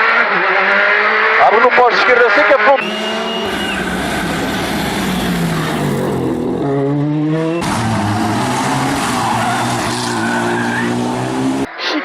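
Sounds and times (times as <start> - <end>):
rally car engine at high revs: 0.0 - 11.7
rally car engine under load: 0.0 - 11.7.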